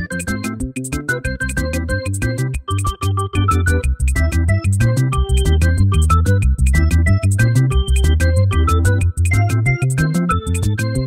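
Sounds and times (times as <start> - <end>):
upbeat synthesizer music: 0.0 - 11.0.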